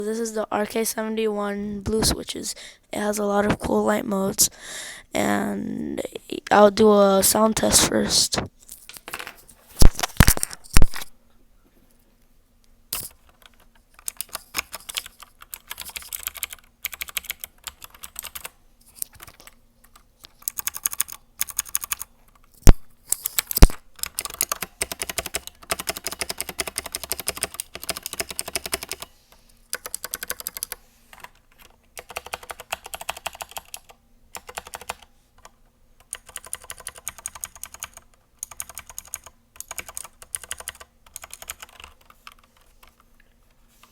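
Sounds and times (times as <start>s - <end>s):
clicky mechanical keyboard typing: 13.0s - 18.5s, 19.1s - 22.1s, 23.2s - 29.1s, 29.7s - 43.0s.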